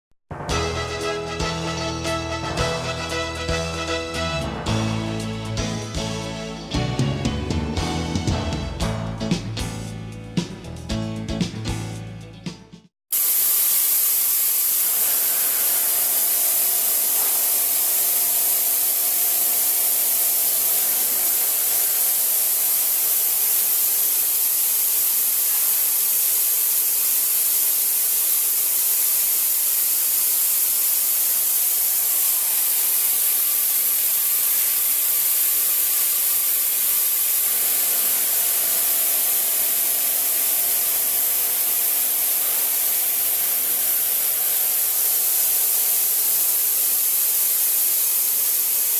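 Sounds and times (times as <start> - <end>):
loud steady machine hiss: 13.1 - 48.9.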